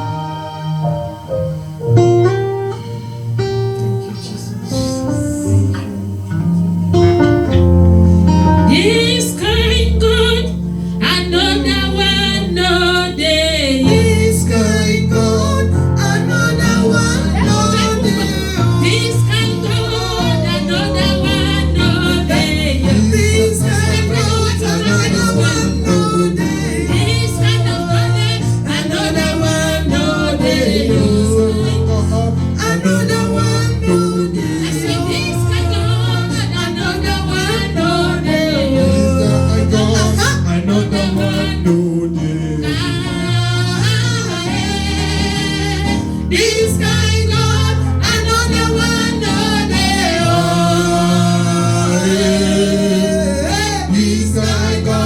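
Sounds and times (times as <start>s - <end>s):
gospel singing: 0.0s - 55.0s
instrumental backing with bass: 0.0s - 55.0s.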